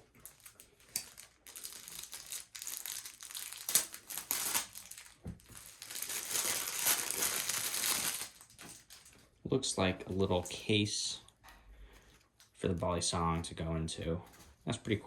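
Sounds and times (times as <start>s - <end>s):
packaging crinkling and rustling: 0.0s - 9.4s.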